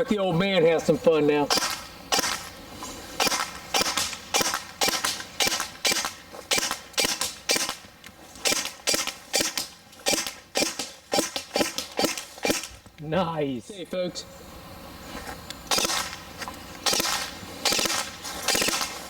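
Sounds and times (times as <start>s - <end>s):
airsoft rifle single shots: 1.5s - 2.5s, 3.2s - 7.8s, 8.4s - 12.7s, 15.7s - 16.2s, 16.8s - 19.0s.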